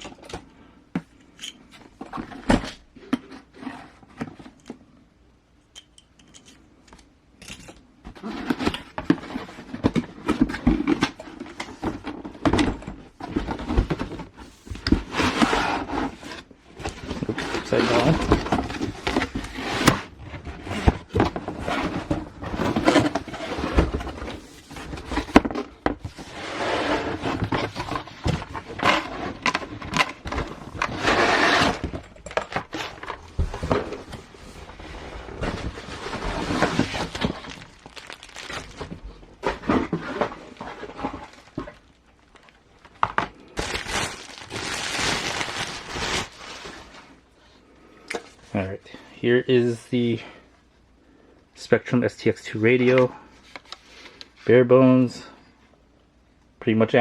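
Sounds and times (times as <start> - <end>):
cardboard and plastic crinkling: 8.1 - 47.3.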